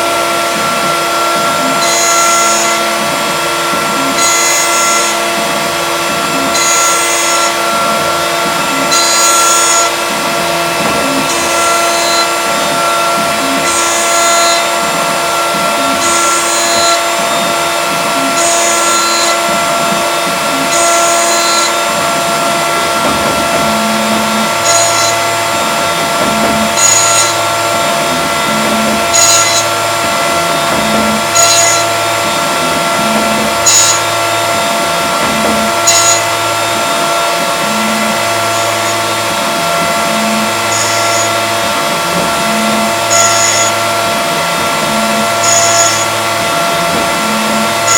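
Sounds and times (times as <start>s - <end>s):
milling machine cutting passes: 0.0s - 47.9s
milling machine spindle whine: 0.0s - 47.9s.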